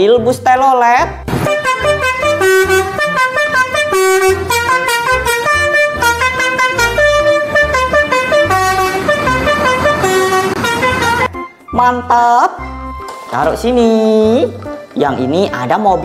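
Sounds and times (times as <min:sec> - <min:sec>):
toy bus horn playing a tune: 0:01.5 - 0:11.4.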